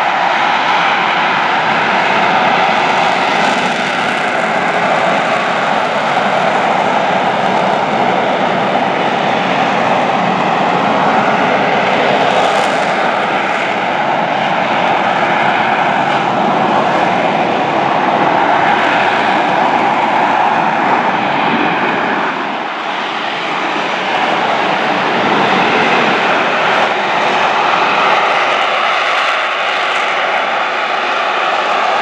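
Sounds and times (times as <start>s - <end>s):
jet engine roaring: 0.0s - 32.0s.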